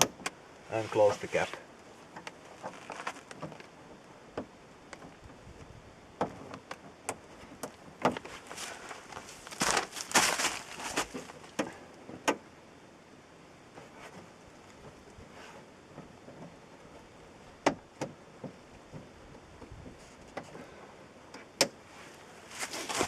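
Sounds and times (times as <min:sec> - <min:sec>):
scraping and rustling: 0:00.7 - 0:03.8, 0:07.3 - 0:11.8, 0:21.9 - 0:23.0.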